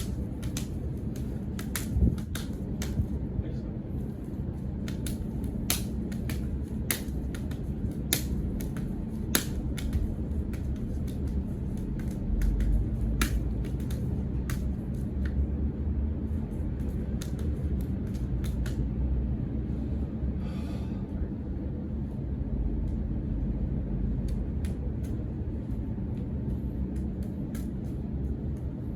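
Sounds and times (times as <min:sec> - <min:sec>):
hands slapping and blocking: 0:00.0 - 0:03.2, 0:04.6 - 0:15.4, 0:16.7 - 0:18.9, 0:24.2 - 0:25.2, 0:26.5 - 0:28.0
steady low rumble: 0:00.0 - 0:28.9.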